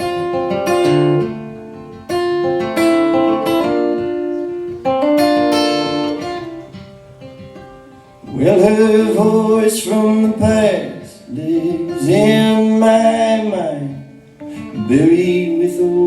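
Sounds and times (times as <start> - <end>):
acoustic guitar playing: 0.0 - 16.0.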